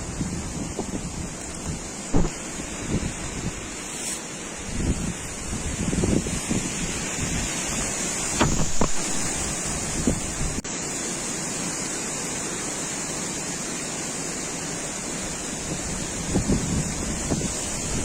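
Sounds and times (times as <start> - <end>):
wind buffeting microphone: 0.0 - 3.9, 4.5 - 10.6, 15.6 - 18.0
low wind gusts: 0.0 - 18.0.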